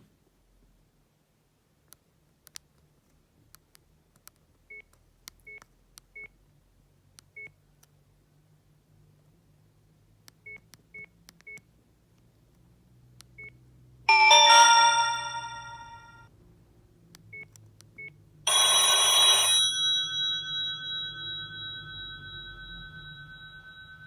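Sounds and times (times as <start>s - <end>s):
mobile phone ringtone: 14.1s - 16.2s, 18.5s - 24.0s
short high beeps: 14.1s - 16.2s.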